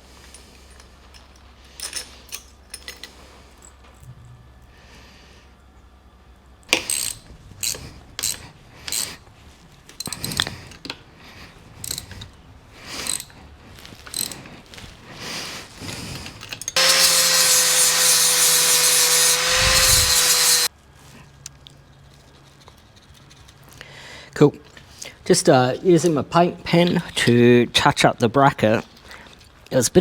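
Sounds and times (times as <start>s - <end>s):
hand tool ratcheting clicks: 6.7s - 9.2s, 11.8s - 12.4s, 13.0s - 13.4s, 14.1s - 14.4s, 16.4s - 20.7s
motorised tool whining: 16.8s - 20.7s.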